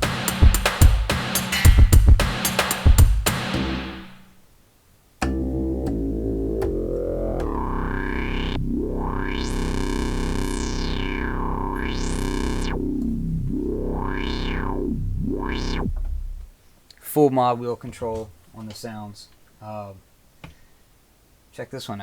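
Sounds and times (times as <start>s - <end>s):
synthesizer filter sweeps: 5.3s - 16.5s.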